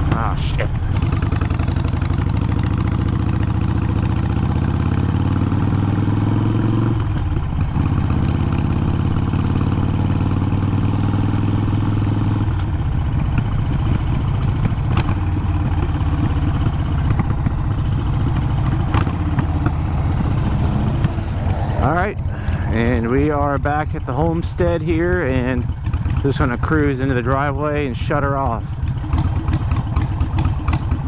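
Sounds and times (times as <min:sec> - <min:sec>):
motorcycle engine running: 0:00.0 - 0:31.0
engine backfiring pops: 0:12.4 - 0:22.7.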